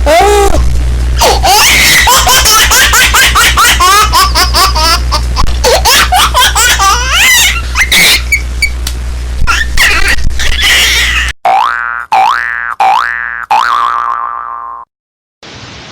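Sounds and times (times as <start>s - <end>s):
steady low hum: 0.0s - 11.3s
high-pitched cackling laughter: 1.2s - 8.5s, 9.5s - 11.3s.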